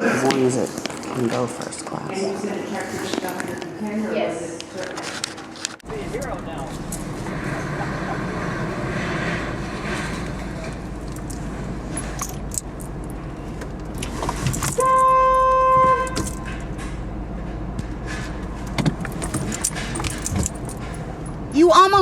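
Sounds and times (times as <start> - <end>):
car engine rumble: 5.7 - 22.0
car horn beep: 14.7 - 16.6.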